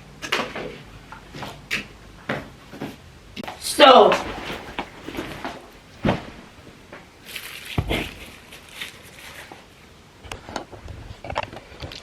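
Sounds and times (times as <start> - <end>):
handling rustles and knocks: 2.2 - 12.0
low thump: 4.2 - 6.6.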